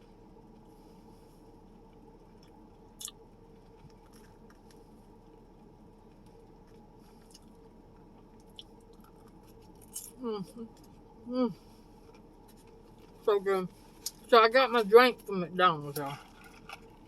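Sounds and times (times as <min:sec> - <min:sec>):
low background hum: 0:00.0 - 0:17.0
person chewing: 0:01.7 - 0:14.3.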